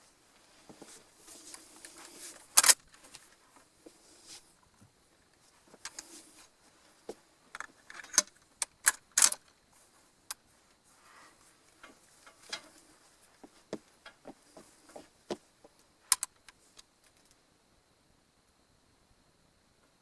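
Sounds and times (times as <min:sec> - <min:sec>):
light metallic rattles: 0:11.6 - 0:15.1.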